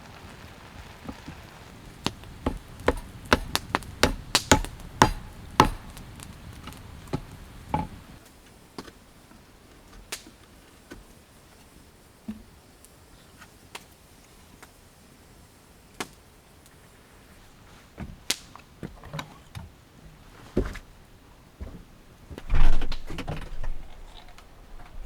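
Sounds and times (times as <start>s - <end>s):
light knocks and clicks: 1.8s - 8.2s
clatter with scraping: 22.4s - 25.0s.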